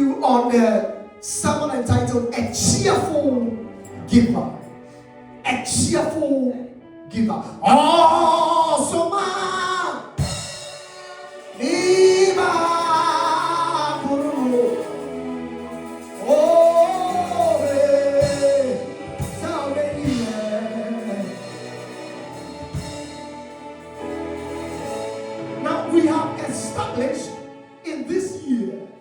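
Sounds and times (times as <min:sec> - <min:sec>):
instrumental accompaniment: 0:00.0 - 0:08.0, 0:08.8 - 0:29.0
men and women singing gospel: 0:10.4 - 0:23.0.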